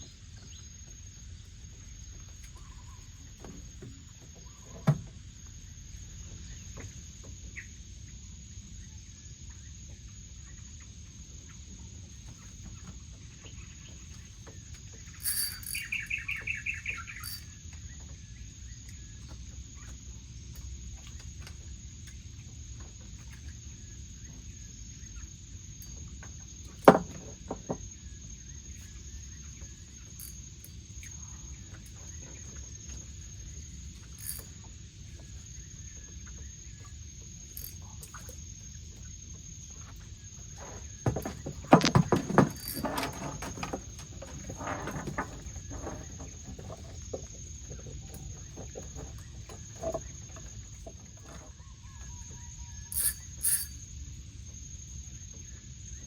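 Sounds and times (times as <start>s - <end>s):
high insect drone: 14.9s - 18.0s, 24.6s - 56.0s.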